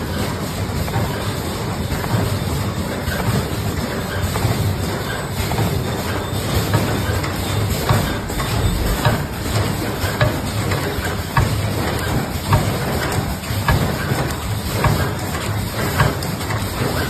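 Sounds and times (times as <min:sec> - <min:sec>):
machine knocking: 0:05.0 - 0:17.0.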